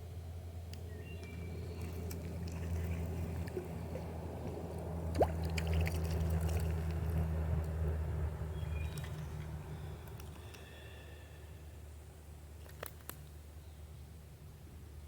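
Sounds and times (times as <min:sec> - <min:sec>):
steady low hum: 0:00.0 - 0:12.6
water dripping and splashing: 0:01.8 - 0:07.3.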